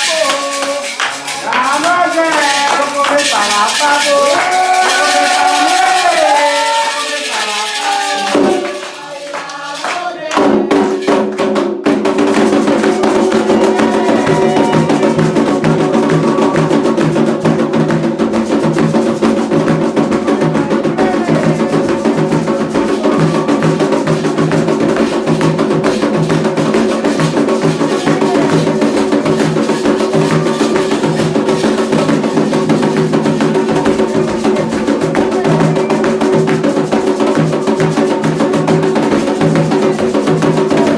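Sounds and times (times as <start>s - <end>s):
voices singing: 0.0s - 11.2s, 12.5s - 17.3s
drum and percussion rhythm: 0.0s - 40.9s.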